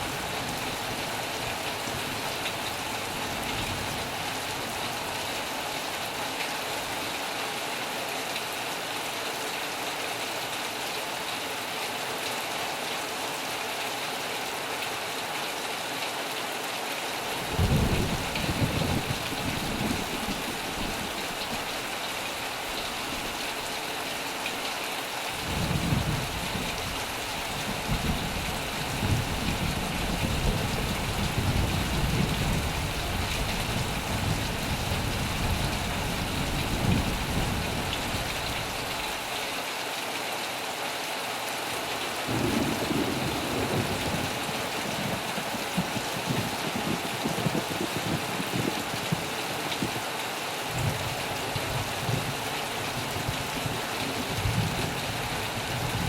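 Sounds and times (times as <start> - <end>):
heavy rain: 0.0 - 56.0
thunder rumbling: 17.4 - 21.7, 25.4 - 38.6, 42.3 - 49.3.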